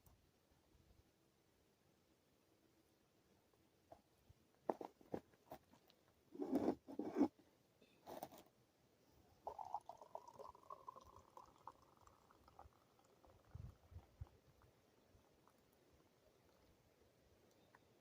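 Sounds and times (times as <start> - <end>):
liquid poured into a cup: 9.5 - 16.8.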